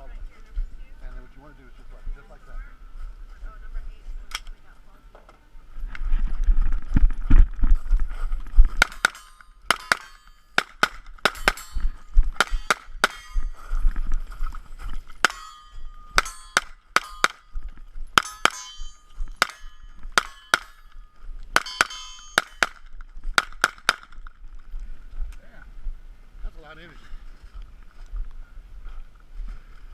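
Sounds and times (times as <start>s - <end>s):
gunshots: 8.8s - 13.6s
metallic ring of steel targets: 8.8s - 13.9s, 15.2s - 22.9s.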